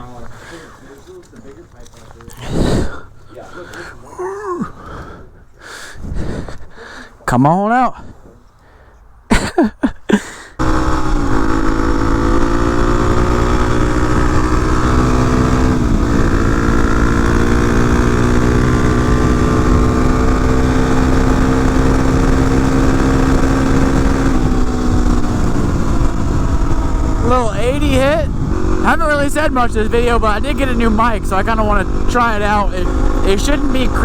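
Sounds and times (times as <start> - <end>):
dirt bike engine running: 10.6 - 34.0.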